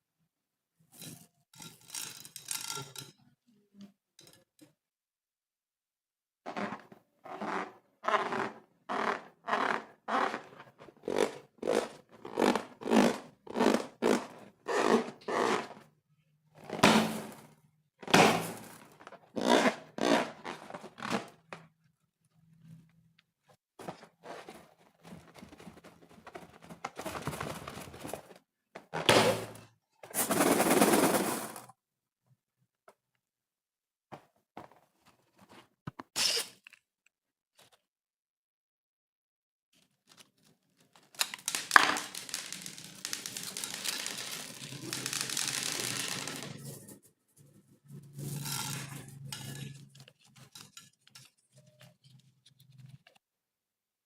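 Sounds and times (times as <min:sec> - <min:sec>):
slime scraping: 0:06.5 - 0:15.9, 0:19.3 - 0:21.3.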